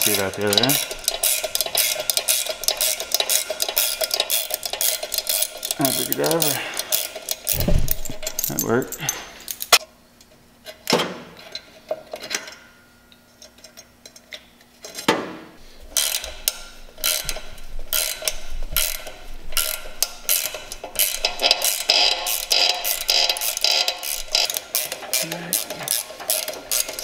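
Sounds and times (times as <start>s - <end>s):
metal clanks of hand tools: 0.0s - 9.8s, 16.0s - 27.0s
ratcheting clicks: 0.0s - 9.8s, 15.9s - 27.0s.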